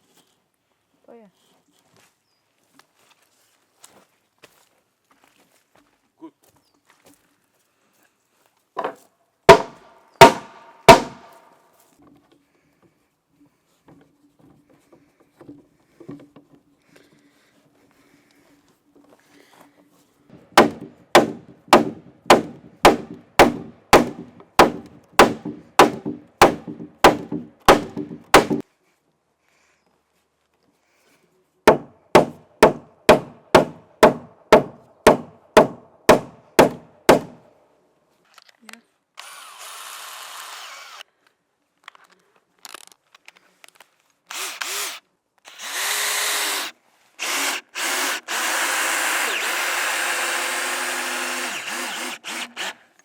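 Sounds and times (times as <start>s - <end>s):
hammering on timber: 9.5s - 11.4s, 20.5s - 28.6s, 31.7s - 37.4s.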